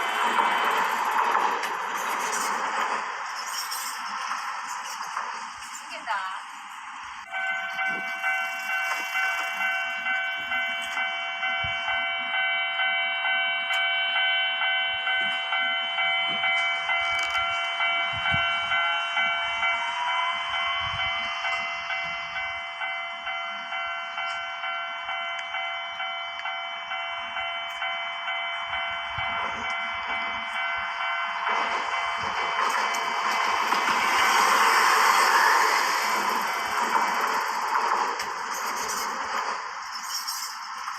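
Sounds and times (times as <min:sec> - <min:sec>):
level crossing bell ringing: 0:07.2 - 0:34.0.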